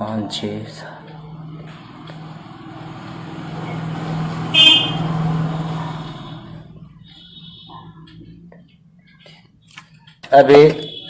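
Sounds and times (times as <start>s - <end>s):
road traffic noise: 0.0s - 11.0s
vehicle horn toot: 4.4s - 7.9s.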